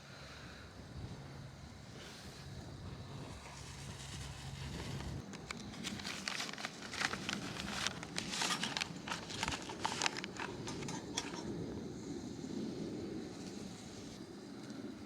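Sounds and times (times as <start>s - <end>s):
packaging rustling: 4.2s - 11.5s
objects being handled clicking: 5.2s - 11.5s.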